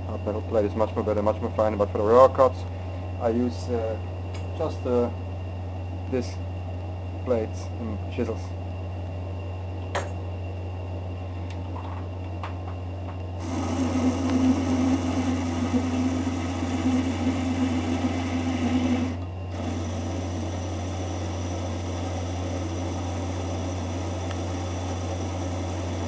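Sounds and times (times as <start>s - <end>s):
lathe humming: 13.4s - 26.0s.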